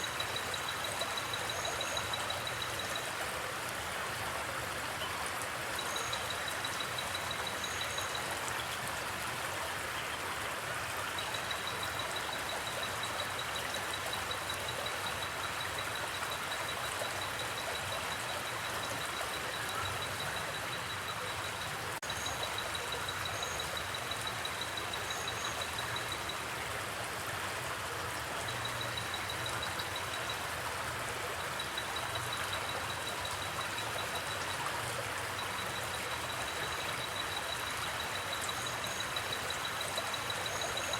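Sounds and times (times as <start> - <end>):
cricket trilling: 0.0 - 3.0, 35.4 - 40.9
river water flowing: 0.0 - 40.9.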